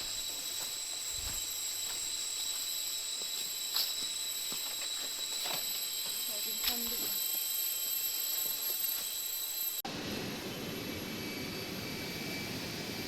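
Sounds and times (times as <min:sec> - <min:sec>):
high-pitched insect drone: 0:00.0 - 0:09.8.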